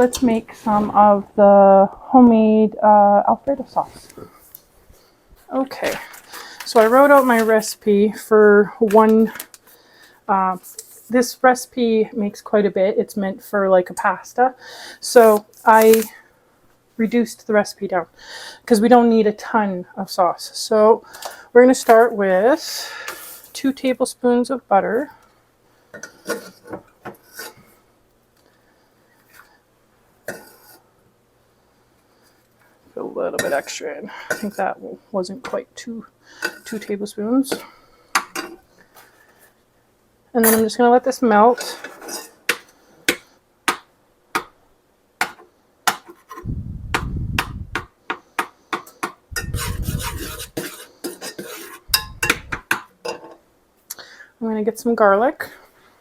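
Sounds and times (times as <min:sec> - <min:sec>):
low rumbling: 0:46.4 - 0:47.8, 0:51.9 - 0:52.6
utensil scraping butter: 0:49.4 - 0:51.9.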